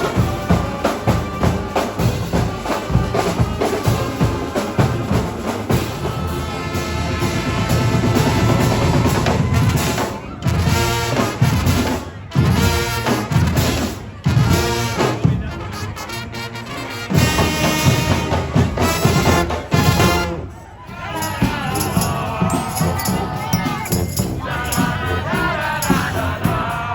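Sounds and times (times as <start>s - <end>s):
brass band playing: 0.0s - 26.9s.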